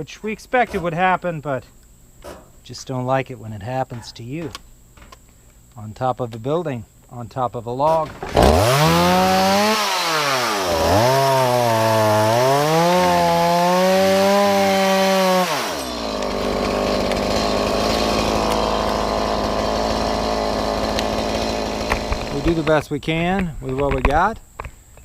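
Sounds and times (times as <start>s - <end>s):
chainsaw cutting: 8.2s - 22.9s.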